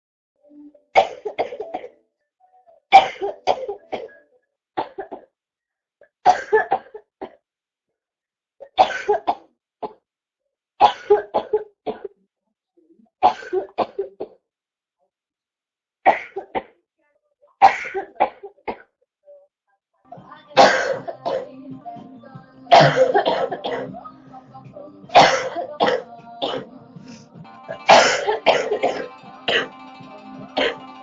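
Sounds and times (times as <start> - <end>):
girl's wet chesty cough: 8.8 - 9.4, 10.8 - 12.1, 17.6 - 18.8, 20.6 - 21.5, 22.7 - 23.9, 25.2 - 26.7, 27.9 - 29.7.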